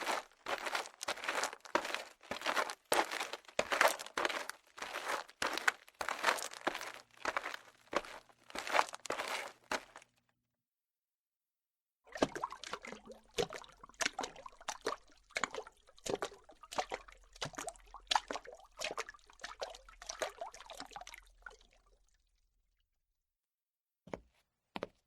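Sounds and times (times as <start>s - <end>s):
gritty scuffing footsteps: 0.0s - 10.0s.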